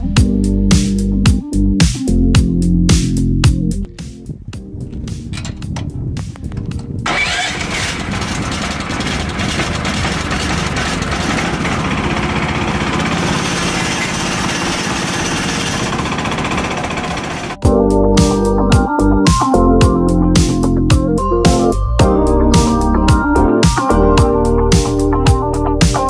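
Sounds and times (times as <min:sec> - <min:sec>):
engine running loudly: 0:07.0 - 0:17.6.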